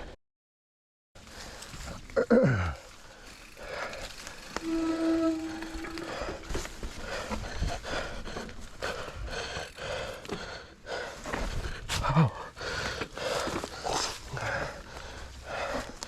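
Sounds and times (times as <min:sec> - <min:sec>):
man panting hard: 0:06.9 - 0:16.0.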